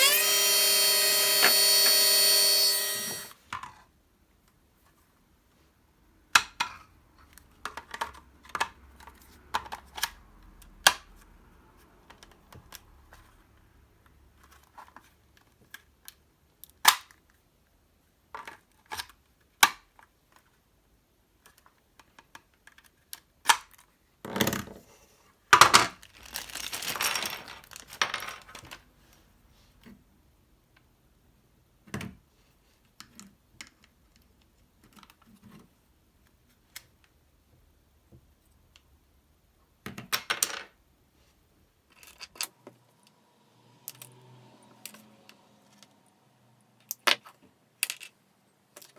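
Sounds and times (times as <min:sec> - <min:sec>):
small parts clicking and knocking: 0:25.6 - 0:28.9, 0:46.8 - 0:48.9.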